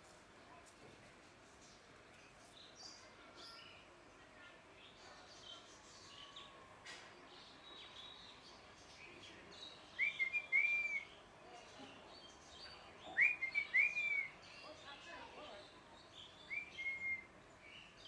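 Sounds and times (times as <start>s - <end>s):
parrot whistled calls: 13.2s - 14.3s.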